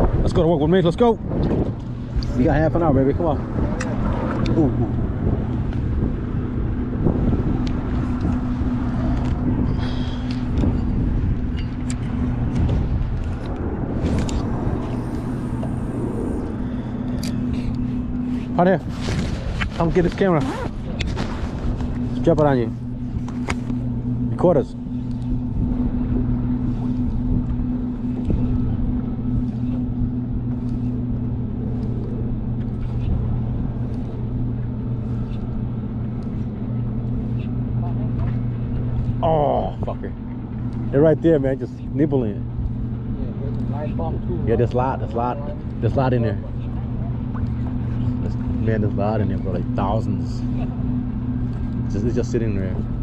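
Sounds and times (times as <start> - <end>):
wind on microphone: 0.0 - 40.3
low engine hum: 0.0 - 53.0.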